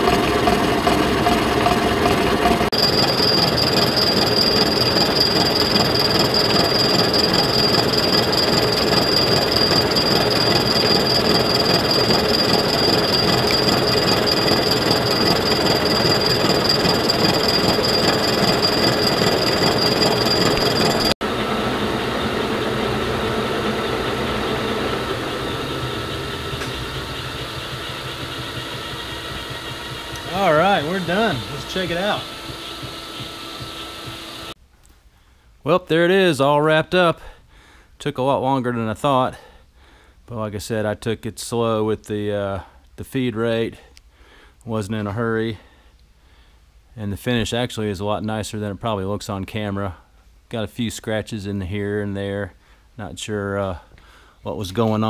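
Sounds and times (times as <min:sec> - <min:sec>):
milling machine cutting: 0:00.0 - 0:34.6
quieter machine running: 0:00.0 - 0:34.6
high-pitched ringing tone: 0:02.4 - 0:34.6.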